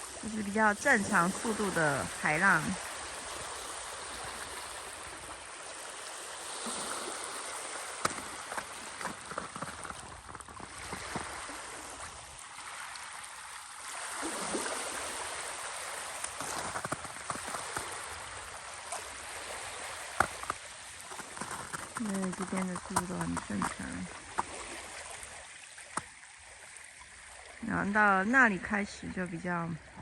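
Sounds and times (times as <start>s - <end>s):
small waves lapping at shore: 0.0s - 30.0s.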